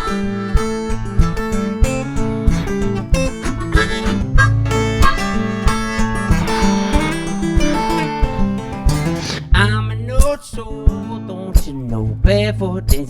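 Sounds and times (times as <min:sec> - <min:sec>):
acoustic guitar music: 0:00.0 - 0:09.6.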